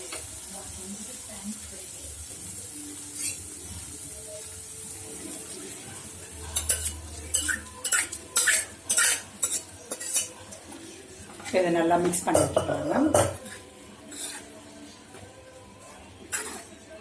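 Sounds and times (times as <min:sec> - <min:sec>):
food sizzling in a pan: 0:00.0 - 0:17.0
ladle scraping a pan: 0:06.5 - 0:10.4, 0:13.2 - 0:14.6, 0:16.3 - 0:16.8.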